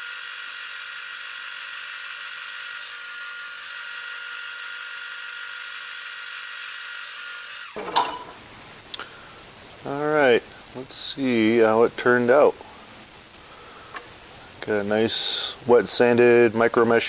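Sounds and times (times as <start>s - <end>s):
wood lathe motor whining: 0.0s - 7.8s.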